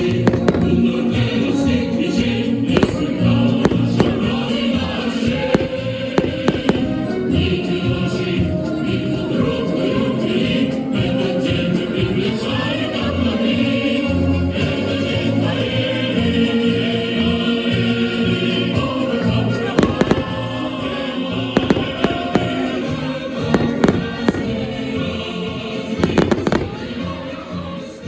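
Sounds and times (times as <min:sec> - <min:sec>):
festive music: 0:00.0 - 0:28.0
fireworks bangs: 0:00.1 - 0:01.0, 0:02.7 - 0:04.6, 0:05.2 - 0:07.0, 0:19.6 - 0:24.8, 0:26.0 - 0:27.0.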